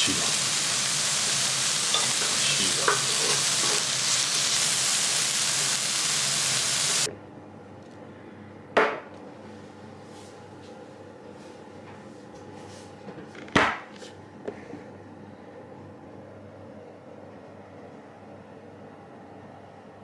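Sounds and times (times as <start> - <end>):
meat sizzling on griddle: 0.0 - 7.1.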